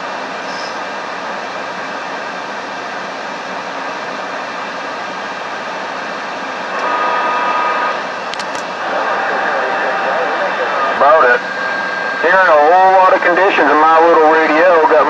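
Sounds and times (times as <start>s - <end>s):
radio static hiss: 6.7s - 15.0s
short radio clicks: 8.3s - 8.7s.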